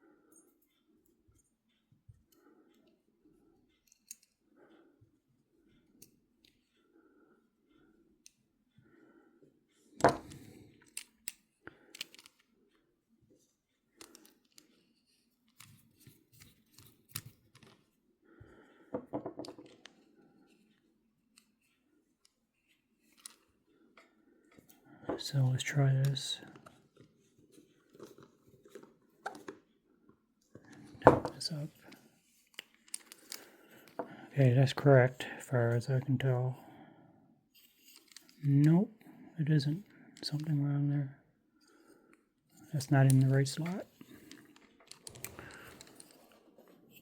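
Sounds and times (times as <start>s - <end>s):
small metal parts clicking: 10.0s - 12.4s, 44.0s - 46.4s.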